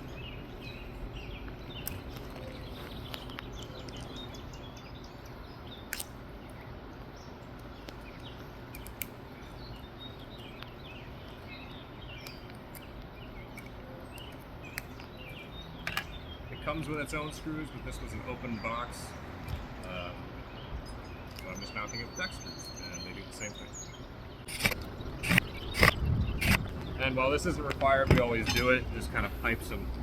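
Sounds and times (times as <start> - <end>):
sharp clicks: 7.5 - 10.7, 24.4 - 27.0
faint bird chirps: 19.5 - 26.6.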